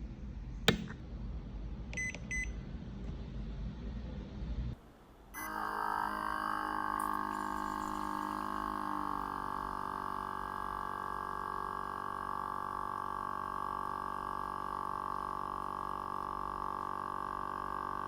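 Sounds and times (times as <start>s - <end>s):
espresso maker pump humming: 5.4s - 18.0s.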